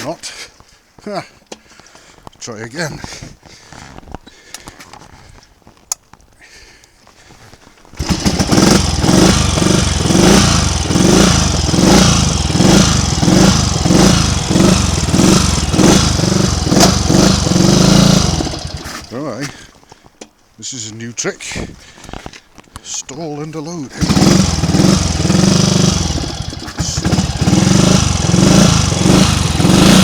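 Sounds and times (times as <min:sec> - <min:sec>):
motorcycle engine running unevenly: 0:08.0 - 0:19.2, 0:24.0 - 0:30.0.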